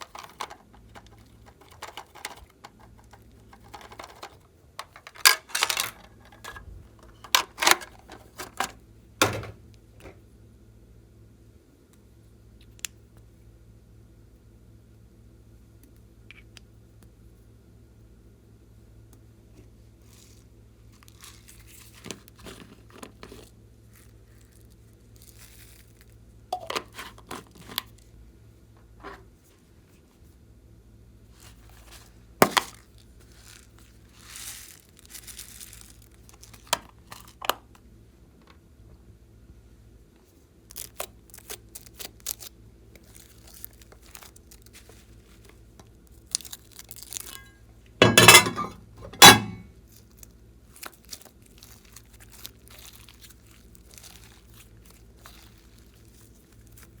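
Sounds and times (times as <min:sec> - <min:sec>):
slime crackling and popping: 0:40.7 - 0:47.4, 0:49.9 - 0:57.0.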